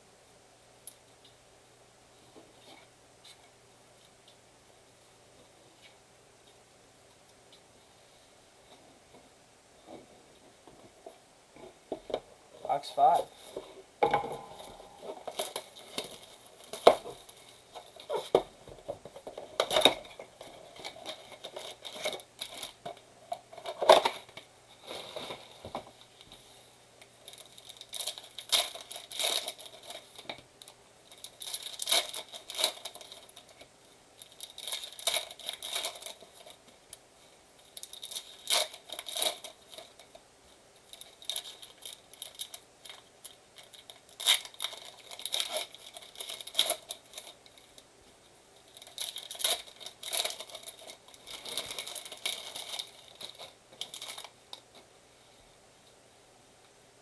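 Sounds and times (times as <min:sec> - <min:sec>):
foil packs crinkling and tearing: 0:19.1 - 0:22.9, 0:27.2 - 0:36.7, 0:37.6 - 0:40.2, 0:40.9 - 0:47.8, 0:48.7 - 0:54.7.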